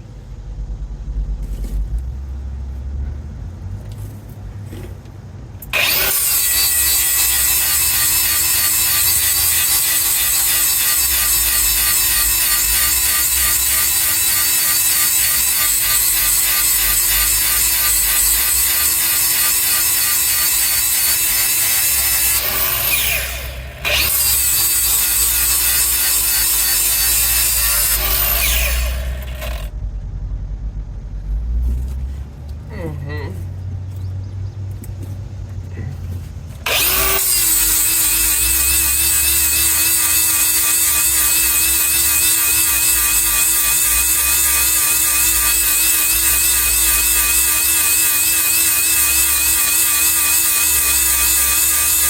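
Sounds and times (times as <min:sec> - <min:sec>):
power grinder whining and grinding: 0:05.7 - 0:29.7, 0:36.6 - 0:52.0.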